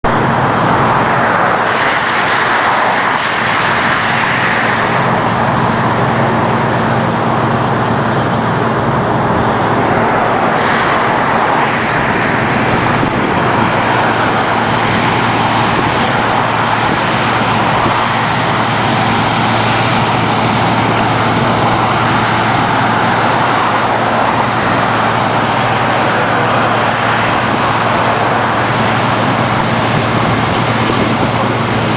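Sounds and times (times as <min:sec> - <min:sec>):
diesel engine drone: 0:00.0 - 0:31.9
loud rush of noise: 0:00.0 - 0:31.9.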